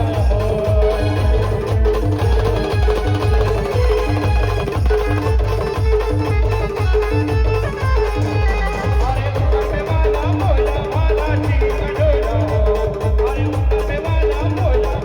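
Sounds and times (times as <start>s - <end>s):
heavy steady drum beat: 0.0s - 15.0s
live band playing instrumental: 0.0s - 15.0s.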